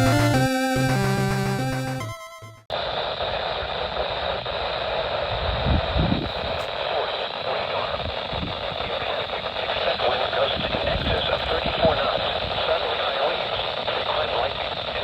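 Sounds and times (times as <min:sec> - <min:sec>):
music: 0:00.0 - 0:02.7
radio static hiss: 0:02.7 - 0:15.0.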